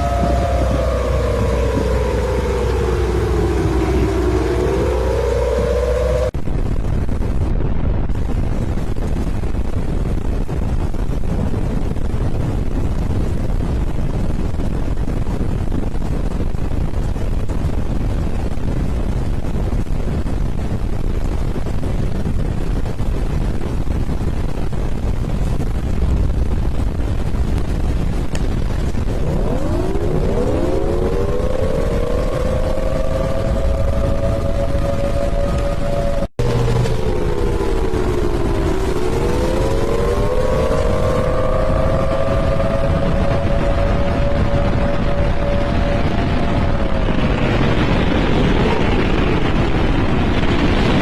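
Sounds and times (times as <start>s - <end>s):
rising sweeps into held musical tones: 0.0s - 6.4s, 29.2s - 47.8s
strong wind on microphone: 0.0s - 51.0s.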